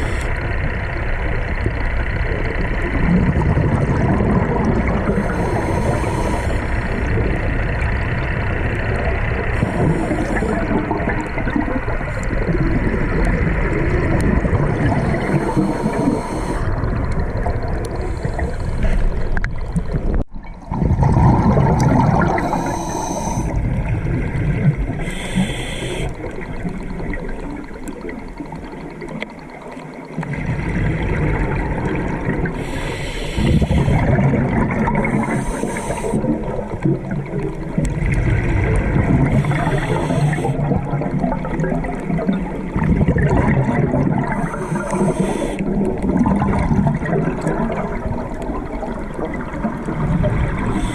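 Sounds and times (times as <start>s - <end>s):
exhaled bubbles gurgling underwater: 0.0s - 50.9s
regulator inhalation hiss: 5.2s - 6.9s, 9.6s - 10.7s, 15.0s - 16.7s, 22.4s - 23.6s, 25.0s - 26.2s, 32.6s - 34.0s, 35.0s - 36.3s, 39.3s - 40.6s, 44.3s - 45.6s, 50.7s - 50.9s.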